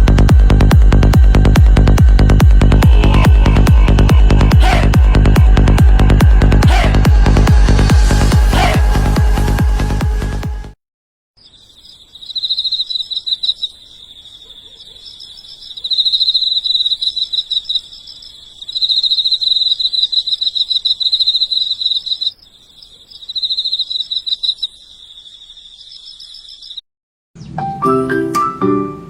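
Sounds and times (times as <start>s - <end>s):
insect trilling: 2.7s - 6.2s, 11.4s - 26.8s.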